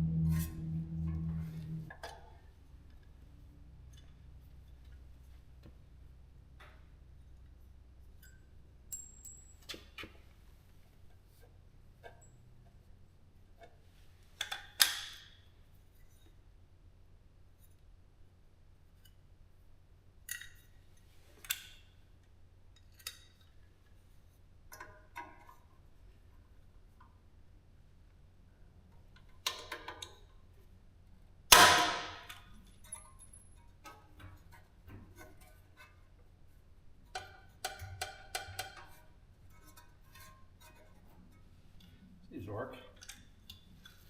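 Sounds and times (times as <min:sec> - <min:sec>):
small metal parts clinking: 0:08.2 - 0:09.7, 0:32.4 - 0:34.0.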